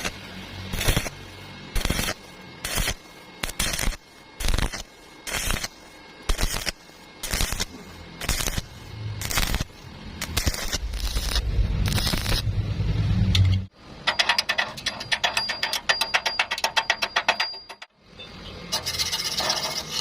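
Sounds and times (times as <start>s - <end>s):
welding arc crackling: 0.0s - 13.7s.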